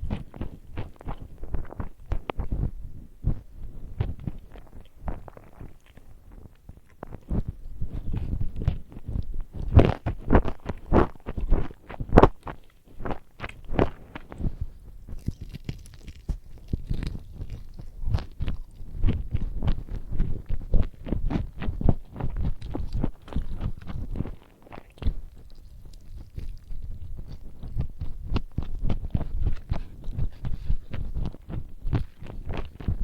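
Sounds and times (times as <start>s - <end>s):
person chewing crunchy food: 0.0s - 33.0s.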